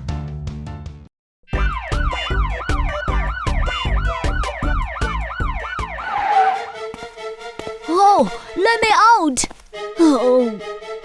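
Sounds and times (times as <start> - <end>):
steady beat: 1.6 - 6.0
cartoon police siren yelping: 1.6 - 6.8.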